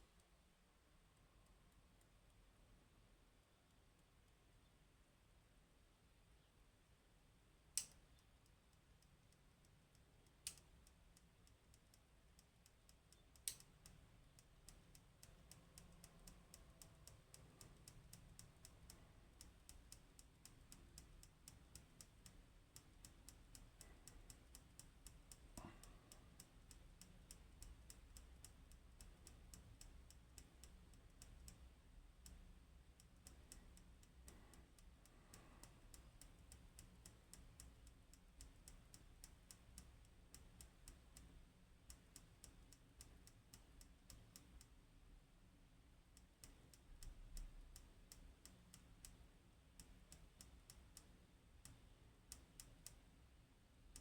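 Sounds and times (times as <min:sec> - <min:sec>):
fast faint high ticking: 0:10.0 - 0:44.7.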